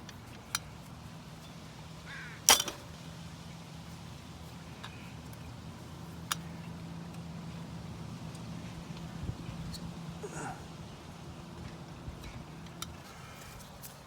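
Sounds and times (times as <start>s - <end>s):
metallic clack: 2.5s - 3.0s.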